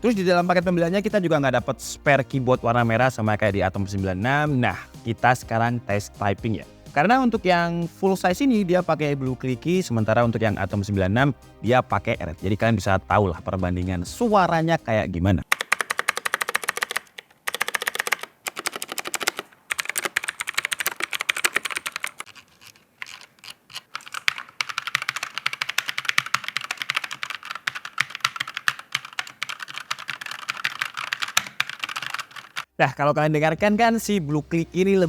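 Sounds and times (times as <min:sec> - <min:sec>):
fast typing on mechanical keyboard: 0:15.5 - 0:32.7.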